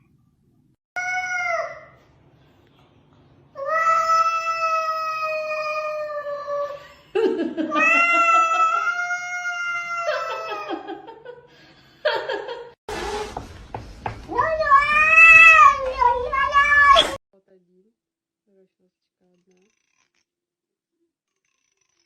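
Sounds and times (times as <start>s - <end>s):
cat yowling: 7.8s - 10.7s.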